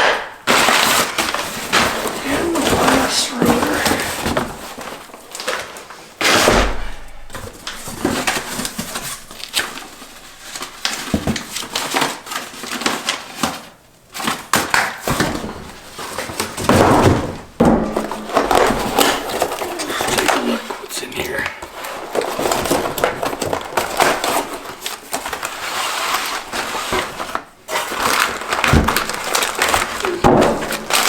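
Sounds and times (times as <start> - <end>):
packaging rustling and scraping: 0.0 - 31.0.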